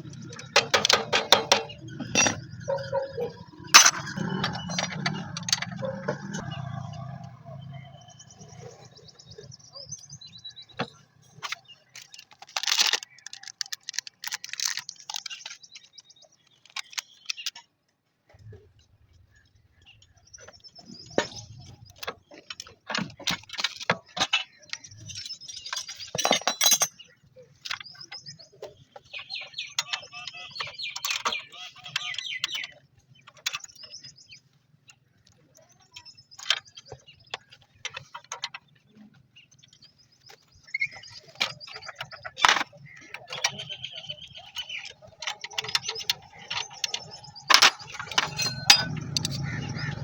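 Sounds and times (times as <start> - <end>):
metal clicks from engine work: 0.0 - 6.5, 44.6 - 50.0
birds chirping: 0.0 - 50.0.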